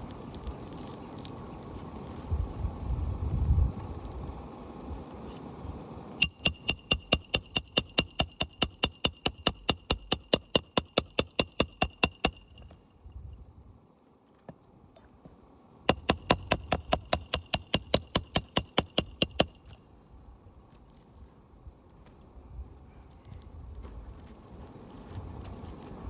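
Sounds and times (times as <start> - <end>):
hammer tapping on metal: 6.2 - 12.8, 15.9 - 19.8.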